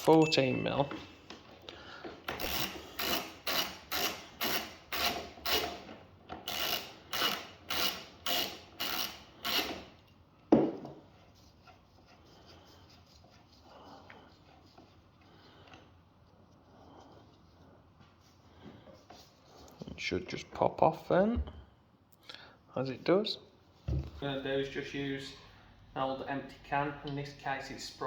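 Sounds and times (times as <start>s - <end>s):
ratchet wrench ratcheting: 2.3s - 10.0s.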